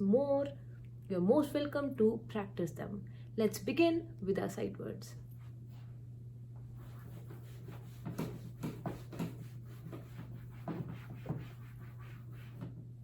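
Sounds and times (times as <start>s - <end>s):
low electrical hum: 0.0s - 13.0s
handwriting strokes and taps: 6.8s - 12.8s.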